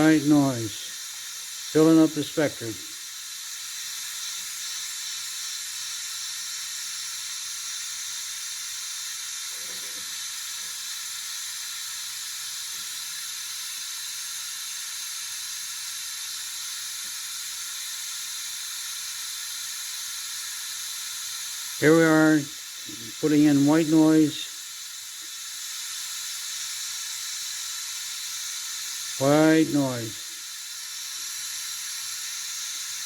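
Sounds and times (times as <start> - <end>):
white noise hiss: 0.0 - 33.0.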